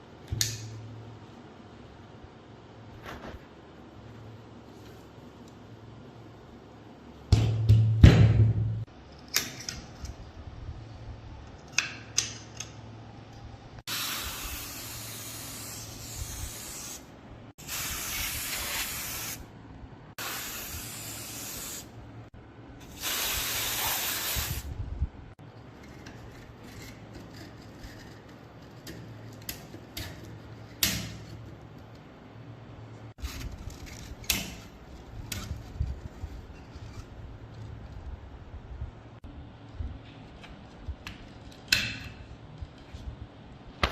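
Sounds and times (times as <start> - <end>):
aerosol spray hissing: 13.9 - 19.4, 20.2 - 21.9, 22.9 - 24.7.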